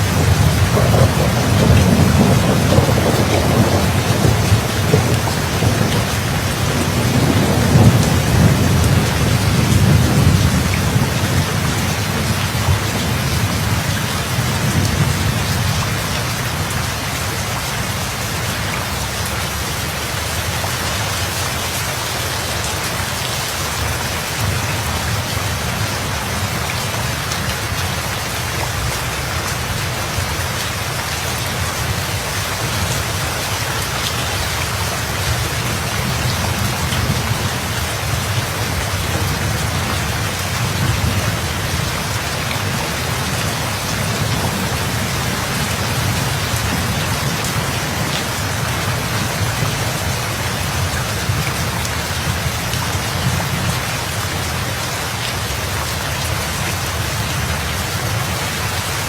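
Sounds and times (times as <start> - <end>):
thunder rumbling: 0.0 - 17.1, 31.5 - 53.9
heavy rain falling: 0.0 - 59.0.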